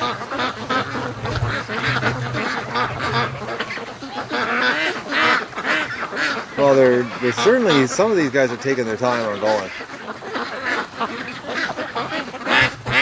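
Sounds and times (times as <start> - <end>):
ducks quacking: 0.0 - 8.3, 9.0 - 13.0.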